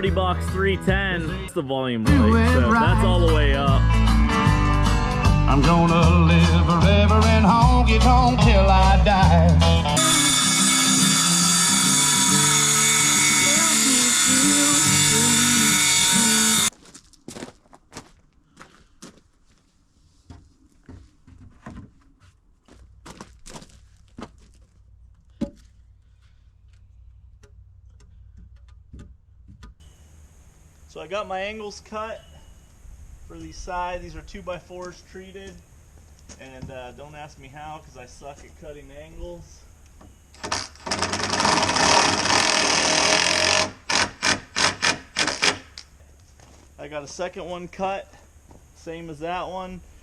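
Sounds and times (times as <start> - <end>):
saw cutting through wood: 10.0 - 16.7, 40.4 - 45.7
steady low rumble: 32.5 - 40.0.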